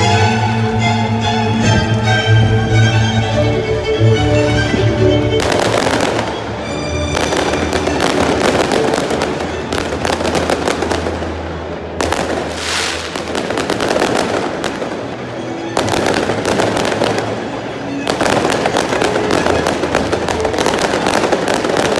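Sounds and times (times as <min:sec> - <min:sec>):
fireworks crackling: 0:05.4 - 0:21.9.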